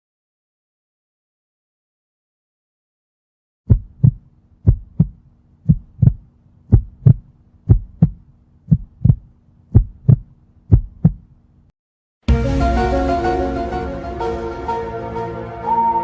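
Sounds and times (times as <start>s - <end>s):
heartbeat thumps: 3.7s - 11.3s.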